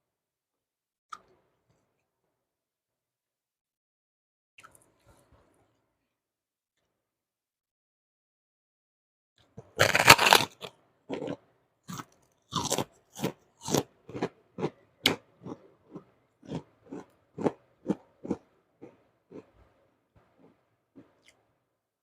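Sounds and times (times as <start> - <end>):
biting crunchy food: 9.6 - 19.6.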